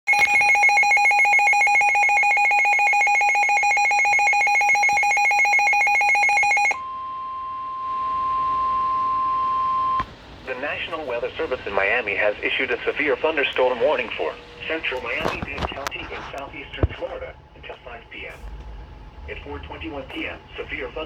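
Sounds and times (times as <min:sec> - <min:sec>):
steady pure alarm tone: 0:00.1 - 0:10.0.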